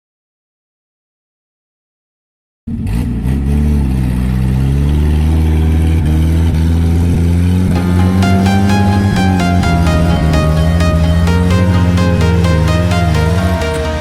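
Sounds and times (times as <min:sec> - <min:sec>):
electronic music: 0:07.8 - 0:14.0.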